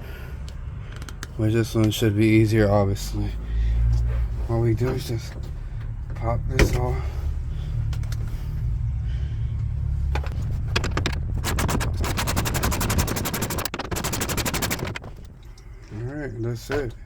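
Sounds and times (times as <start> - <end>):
steady low hum: 0.0 - 17.0
ratchet clicking: 10.5 - 15.2.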